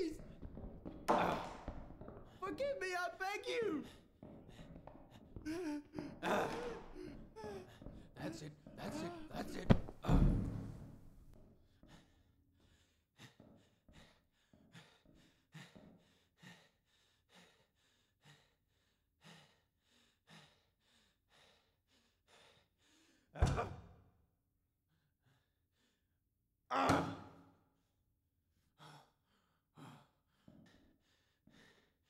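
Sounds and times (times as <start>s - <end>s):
man panting: 1.4s - 9.9s, 11.7s - 23.3s, 28.6s - 32.0s.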